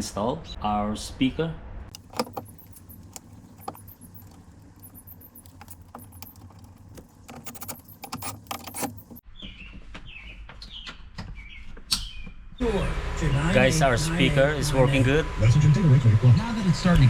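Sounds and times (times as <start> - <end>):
metallic clinks and rattles: 1.9 - 9.2.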